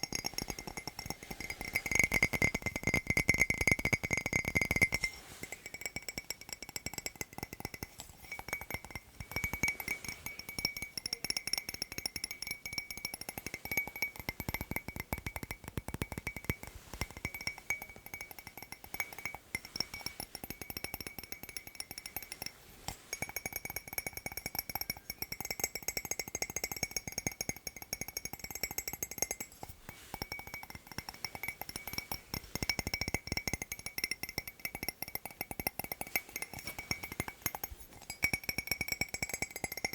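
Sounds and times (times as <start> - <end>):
fast tapping on hard objects: 0.0 - 39.9
thin high ringing note: 4.9 - 6.0, 8.0 - 11.4.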